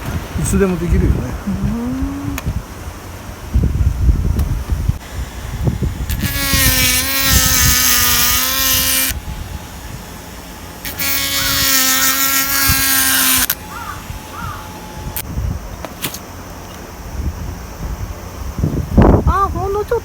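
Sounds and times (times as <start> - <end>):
rotary tool whining: 5.5 - 15.2.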